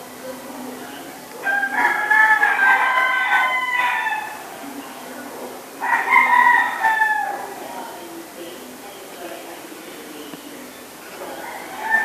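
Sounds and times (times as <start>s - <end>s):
rooster crowing: 1.4s - 4.6s, 5.8s - 7.6s, 11.2s - 12.0s.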